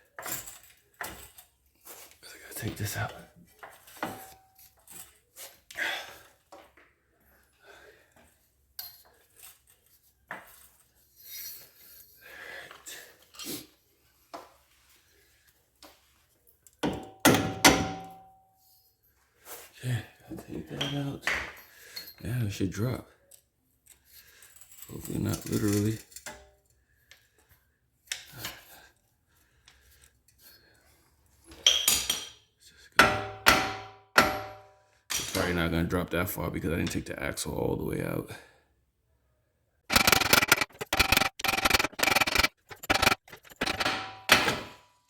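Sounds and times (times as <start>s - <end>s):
metal tools clinking and scraping: 0.0s - 6.3s, 20.4s - 22.6s, 23.2s - 26.6s, 39.9s - 44.8s
loud metal clanks: 33.0s - 34.7s
sharp ringing metal strikes: 33.0s - 34.8s
metal scrape: 39.9s - 44.8s.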